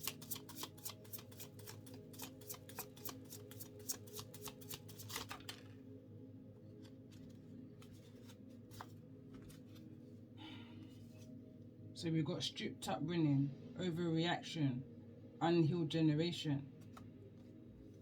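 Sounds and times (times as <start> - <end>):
cards shuffled by hand: 0.0 - 5.7, 6.8 - 9.9.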